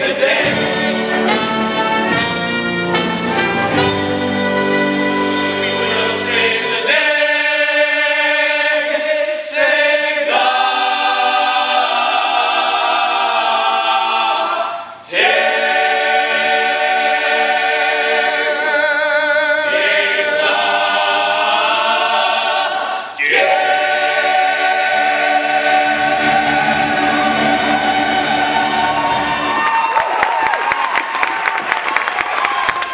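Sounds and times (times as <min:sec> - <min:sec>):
cast singing in chorus: 0:05.8 - 0:29.6.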